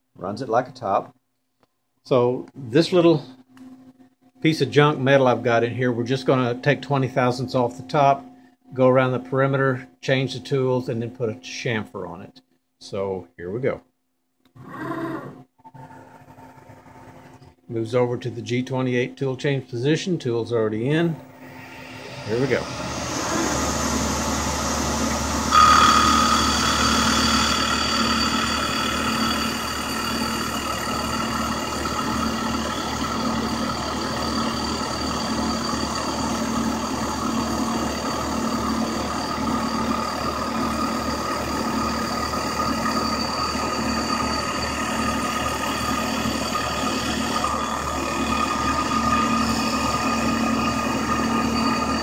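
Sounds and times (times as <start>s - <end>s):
milling machine running: 21.3s - 52.0s.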